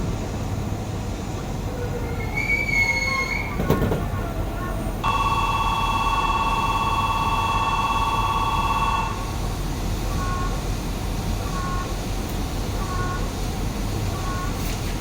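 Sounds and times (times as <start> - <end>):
train hum: 0.0 - 15.0
two-pitch electronic buzzer: 5.0 - 9.2.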